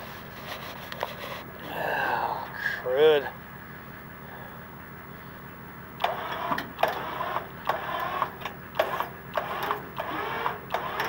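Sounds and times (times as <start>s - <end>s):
winch clunking and grinding: 6.0s - 11.0s.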